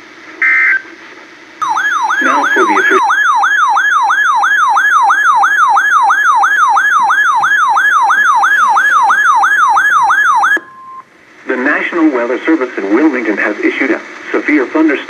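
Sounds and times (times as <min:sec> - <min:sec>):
warbling electronic siren: 0:01.6 - 0:10.7
steady alarm tone: 0:01.6 - 0:11.0.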